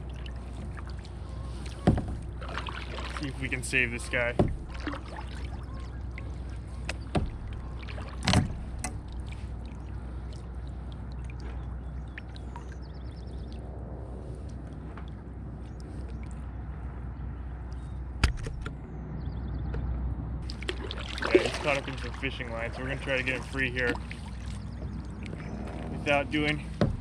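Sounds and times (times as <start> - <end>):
water sloshing against hull: 0.0 - 27.0
knocks on boat: 1.8 - 2.3, 4.3 - 5.1, 6.9 - 7.6, 26.8 - 27.0.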